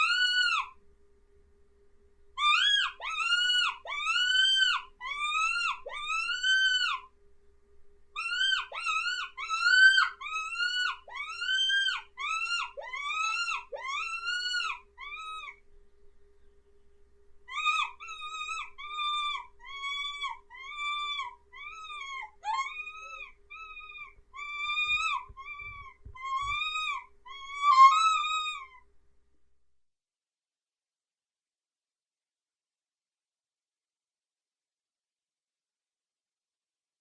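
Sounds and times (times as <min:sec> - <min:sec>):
high-pitched mouse squeaks: 0:02.4 - 0:07.0, 0:08.2 - 0:15.6, 0:17.5 - 0:28.8.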